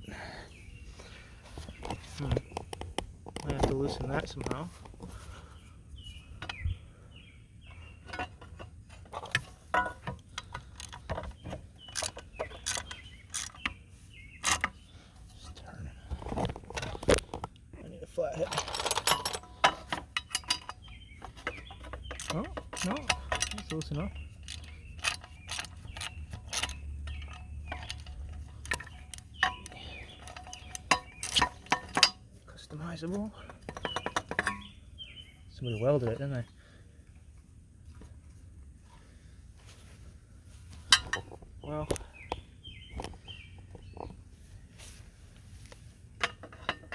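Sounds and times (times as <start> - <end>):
hand tools clicking on metal: 8.0 - 13.8, 14.4 - 14.8, 18.4 - 32.2, 33.4 - 34.8.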